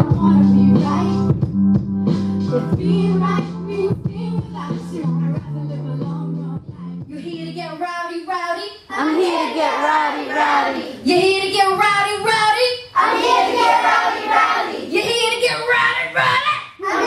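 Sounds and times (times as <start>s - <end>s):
children singing together: 8.9s - 11.1s, 12.9s - 14.9s, 16.8s - 17.0s.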